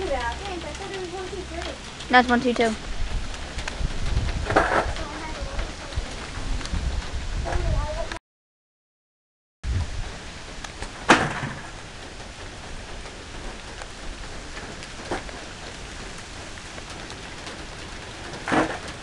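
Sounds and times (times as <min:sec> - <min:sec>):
steady rain falling: 0:00.0 - 0:08.2, 0:09.6 - 0:19.0
sharp knocks: 0:11.0 - 0:11.8.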